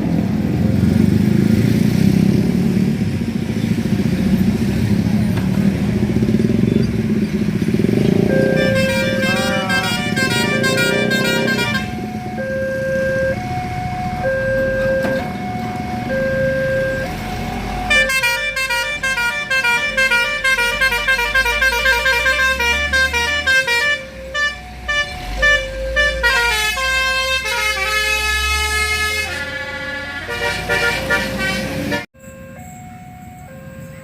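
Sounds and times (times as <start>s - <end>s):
bus engine running: 0.0s - 32.1s
multi-tone musical bus horn: 7.8s - 13.5s, 17.8s - 32.2s.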